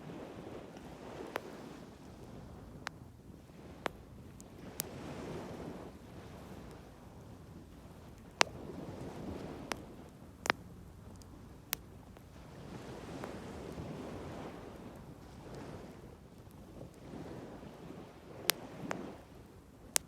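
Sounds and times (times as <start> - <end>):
sea waves washing: 0.0 - 10.7, 11.7 - 19.4.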